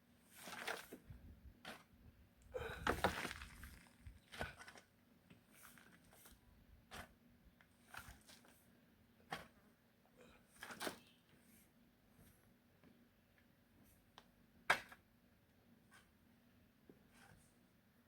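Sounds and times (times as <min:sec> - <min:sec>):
scrapes and crunches in soil: 0:00.2 - 0:02.0, 0:02.7 - 0:07.2.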